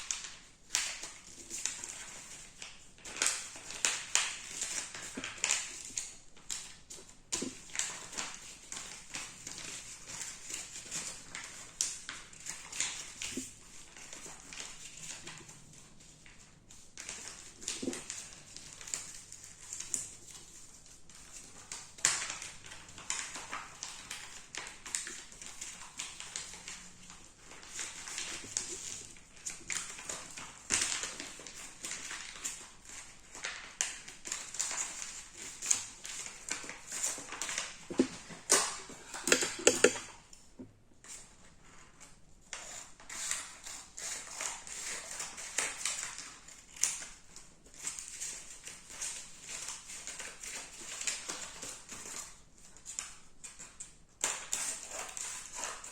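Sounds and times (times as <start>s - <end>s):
paper rustling and crinkling: 0.0s - 55.9s
light taps on paper: 39.2s - 40.0s.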